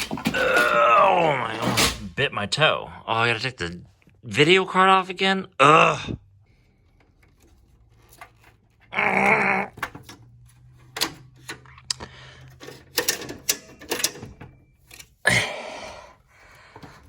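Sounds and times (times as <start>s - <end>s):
clicks and rattles of computer parts: 0.0s - 0.7s, 9.8s - 15.2s
person groaning: 0.3s - 1.6s, 5.6s - 6.2s, 8.9s - 9.8s, 15.2s - 16.2s.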